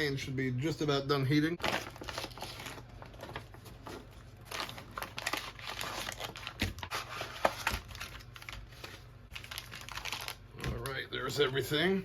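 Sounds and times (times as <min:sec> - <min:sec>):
plastic packaging crinkling: 0:01.6 - 0:11.0.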